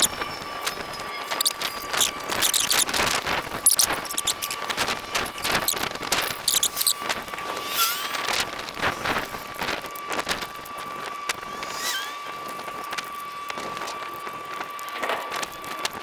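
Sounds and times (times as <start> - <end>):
battery fire crackling: 0.0 - 16.0.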